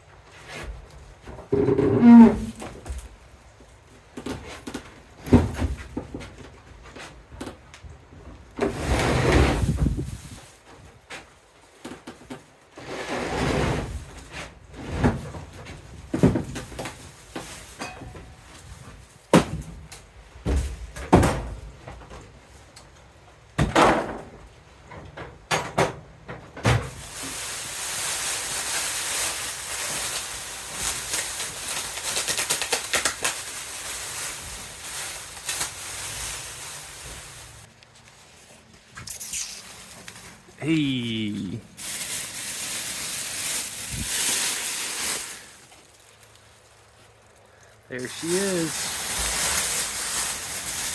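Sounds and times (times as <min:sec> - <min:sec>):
knocks and thuds of unpacking: 0:04.0 - 0:07.6, 0:08.4 - 0:12.5, 0:13.8 - 0:22.4, 0:23.6 - 0:37.7
steady hissing noise: 0:33.8 - 0:45.8, 0:47.9 - 0:50.9.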